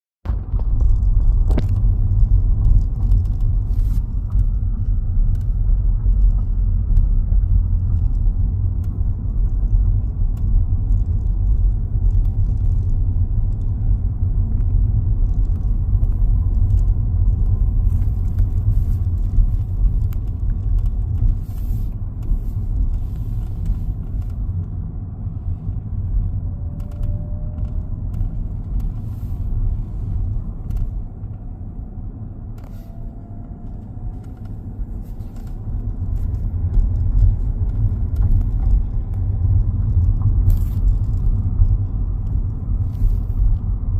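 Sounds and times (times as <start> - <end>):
car cabin road rumble: 0.2 - 43.9
light clicks and creaks: 0.5 - 24.8, 25.5 - 31.6, 32.5 - 43.9.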